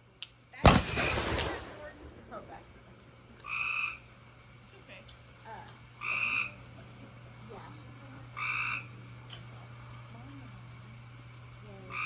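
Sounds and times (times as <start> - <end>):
frog calling: 3.4 - 4.1, 6.0 - 6.7, 8.4 - 9.0.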